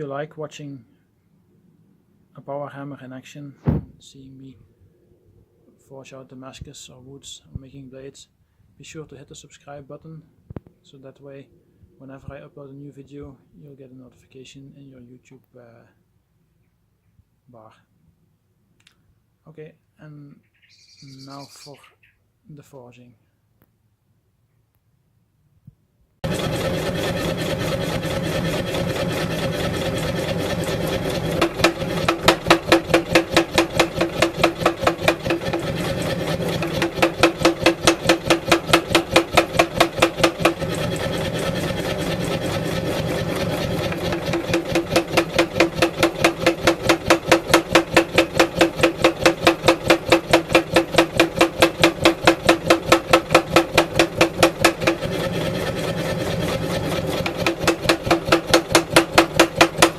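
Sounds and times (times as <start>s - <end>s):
power hammer forging steel: 26.2s - 59.9s.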